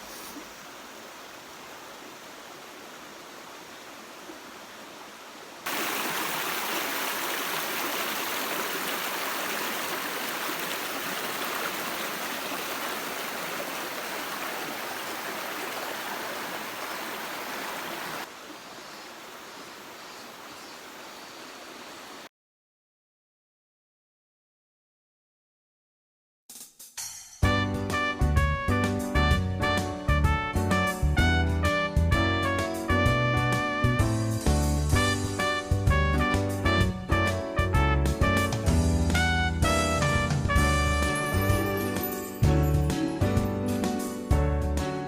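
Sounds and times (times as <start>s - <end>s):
running water rushing: 0.0s - 22.3s.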